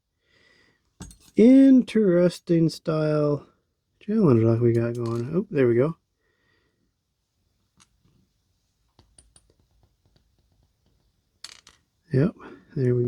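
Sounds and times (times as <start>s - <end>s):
faint clicks of lock pins: 4.7s - 5.4s.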